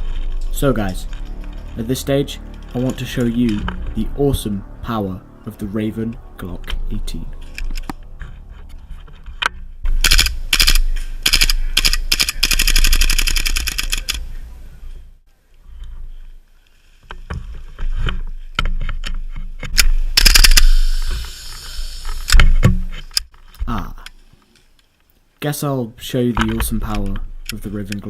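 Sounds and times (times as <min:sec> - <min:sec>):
airsoft gun shots and bursts: 0:19.9 - 0:21.0.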